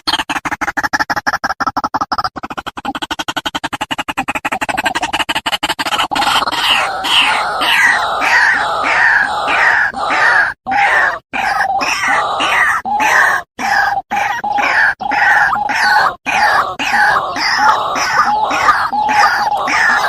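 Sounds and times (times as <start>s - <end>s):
waterhen calling harsh notes: 5.9s - 20.0s.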